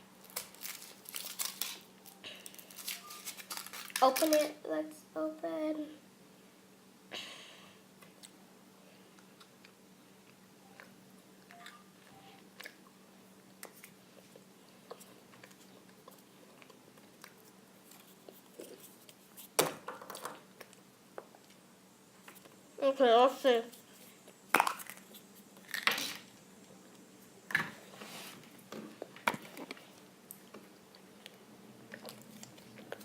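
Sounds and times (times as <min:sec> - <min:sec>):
chocolate shell crunching: 0:00.2 - 0:04.4.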